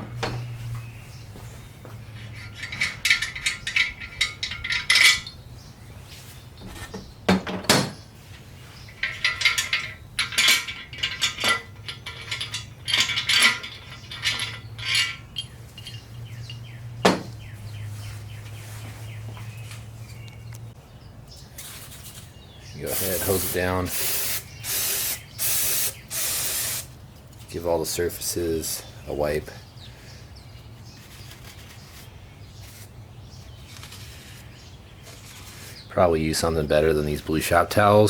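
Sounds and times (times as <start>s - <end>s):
metal parts and tools clinking: 2.2s - 5.4s, 8.8s - 17.3s.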